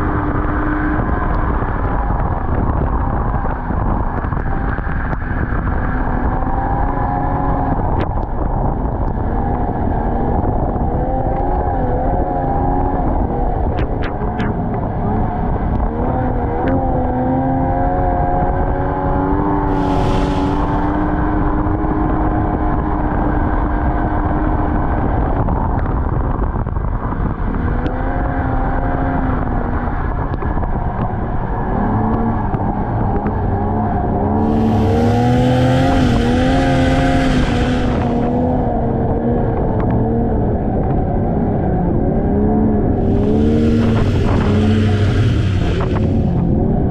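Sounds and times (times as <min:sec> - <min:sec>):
snowmobile engine running: 0:34.3 - 0:39.0, 0:42.9 - 0:46.9.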